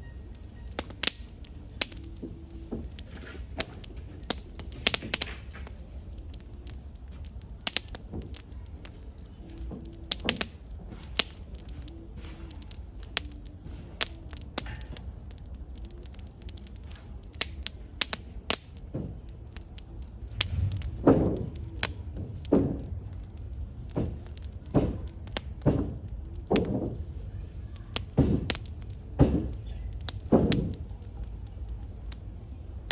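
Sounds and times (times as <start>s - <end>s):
campfire crackling and popping: 0.0s - 32.9s.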